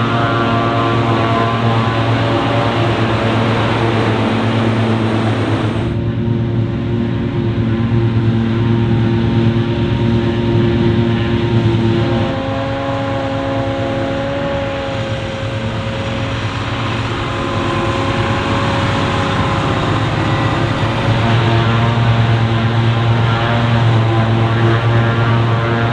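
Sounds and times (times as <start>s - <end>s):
diesel engine droning: 0.0s - 6.2s, 11.9s - 25.9s.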